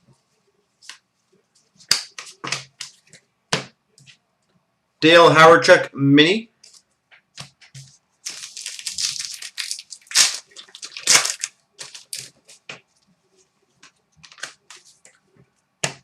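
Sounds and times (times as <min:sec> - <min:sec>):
crinkling card pack wrappers: 0:08.2 - 0:12.7, 0:14.2 - 0:15.0.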